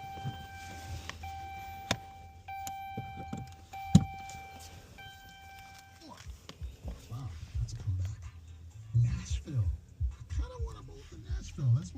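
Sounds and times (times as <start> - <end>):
electronic warning tone: 0.0 - 6.0.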